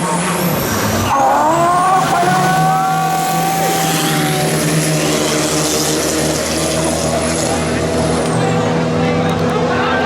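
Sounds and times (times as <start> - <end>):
boat engine at high revs: 0.0 - 10.0.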